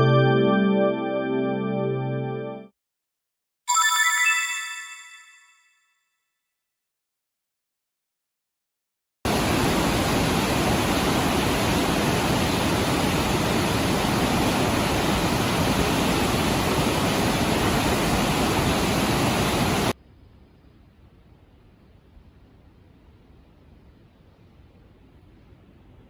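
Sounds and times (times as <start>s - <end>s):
waterfall rushing: 9.3s - 20.0s.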